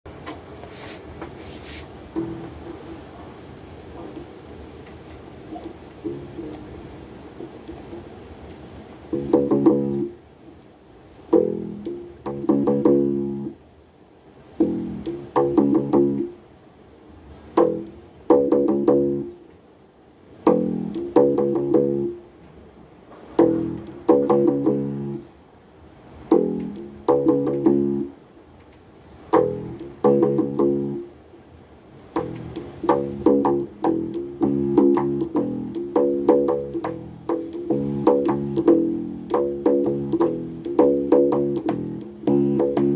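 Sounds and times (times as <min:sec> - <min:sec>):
bass guitar riff: 0:02.2 - 0:02.6, 0:06.0 - 0:06.4, 0:09.1 - 0:10.2, 0:11.3 - 0:13.6, 0:14.6 - 0:16.4, 0:17.6 - 0:19.4, 0:20.4 - 0:22.2, 0:23.4 - 0:25.2, 0:26.3 - 0:28.2, 0:29.4 - 0:31.1, 0:32.2 - 0:42.9.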